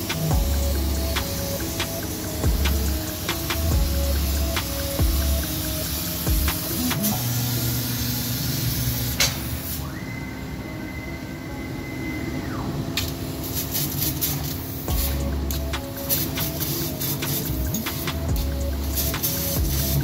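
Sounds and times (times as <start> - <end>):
laser cutter hissing: 0.0 - 10.6, 12.0 - 20.0
high machine whine: 0.0 - 20.0.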